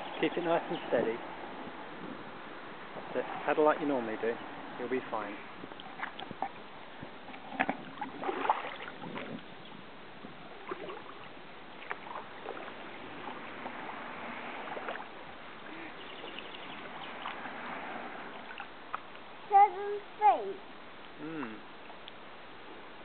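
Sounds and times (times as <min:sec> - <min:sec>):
paddle splashing in water: 0:05.6 - 0:09.5, 0:10.2 - 0:19.2.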